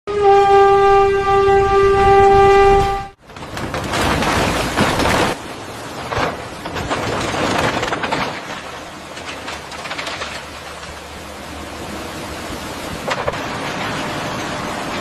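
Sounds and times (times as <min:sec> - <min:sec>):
train horn: 0:00.1 - 0:03.2
train rattling on rails: 0:02.1 - 0:15.0.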